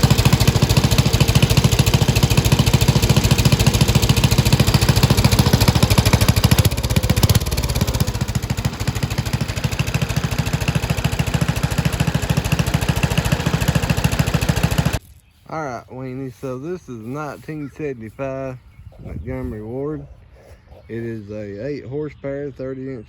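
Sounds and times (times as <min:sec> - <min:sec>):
riding mower engine running: 0:00.0 - 0:15.0.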